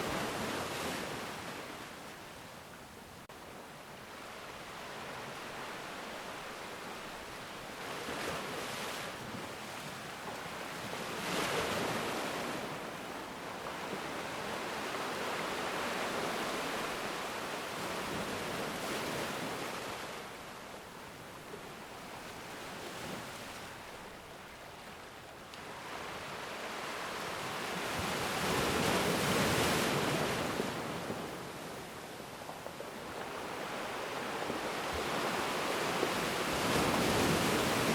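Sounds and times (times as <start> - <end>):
ocean waves breaking: 25.6 - 37.9.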